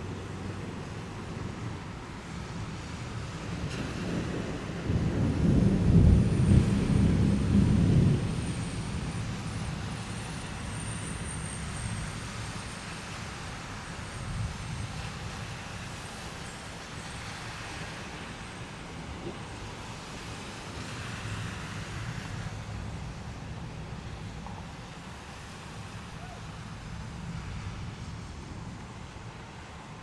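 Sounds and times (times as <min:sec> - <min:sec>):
thunder rumbling: 0:00.0 - 0:12.0
heavy rain hissing: 0:00.0 - 0:30.0.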